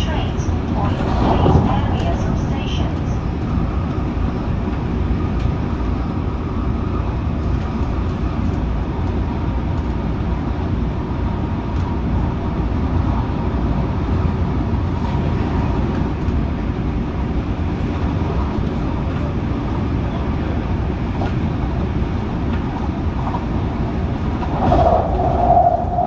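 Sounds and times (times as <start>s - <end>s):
electric train rumble: 0.0s - 26.0s
wheel and rail noise: 11.2s - 26.0s.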